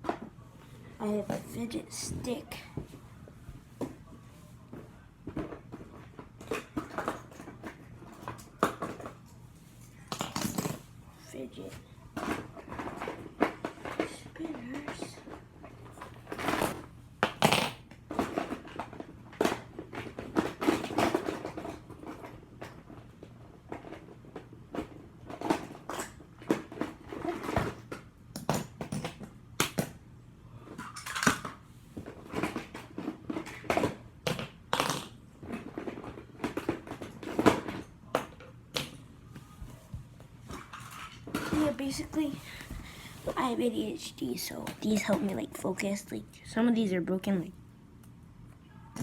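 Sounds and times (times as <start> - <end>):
plastic toys clicking and rattling: 30.7 - 31.6, 40.5 - 42.3.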